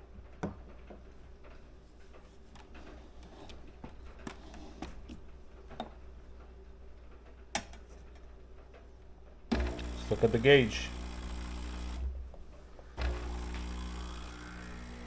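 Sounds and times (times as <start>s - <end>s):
espresso equipment clicking: 9.5s - 12.0s, 13.0s - 15.0s.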